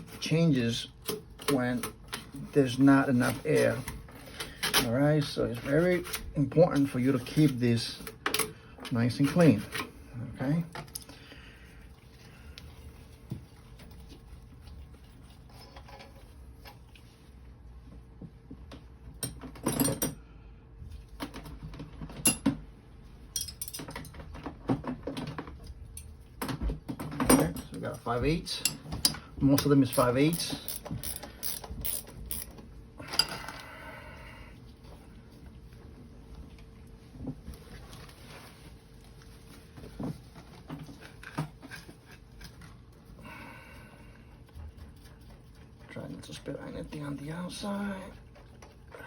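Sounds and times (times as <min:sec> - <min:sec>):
hand tools clicking on metal: 0:28.6 - 0:32.6.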